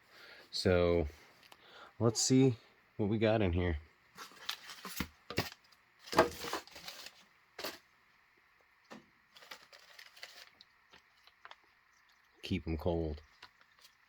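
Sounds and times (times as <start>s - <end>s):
packing material crackling: 4.2s - 7.8s, 9.3s - 11.6s.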